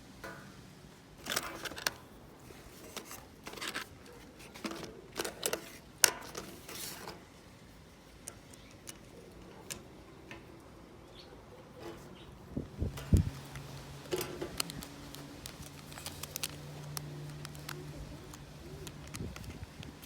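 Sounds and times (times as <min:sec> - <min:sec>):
packaging rustling: 0:01.2 - 0:07.2, 0:13.2 - 0:20.0.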